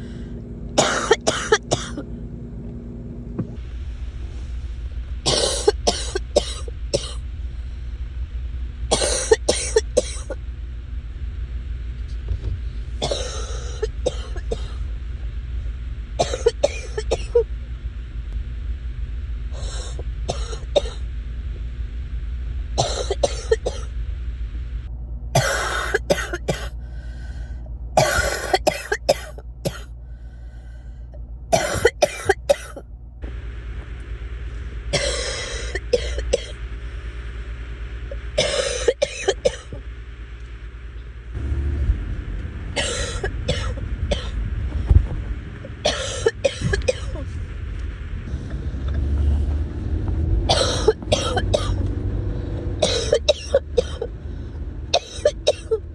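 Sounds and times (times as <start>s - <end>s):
steady low hum: 0.0s - 55.9s
person coughing: 0.8s - 2.0s, 5.3s - 7.2s, 13.0s - 14.8s, 25.4s - 26.7s, 28.0s - 29.9s, 31.6s - 32.8s, 45.8s - 47.3s, 50.5s - 51.8s, 52.8s - 54.1s, 55.0s - 55.8s.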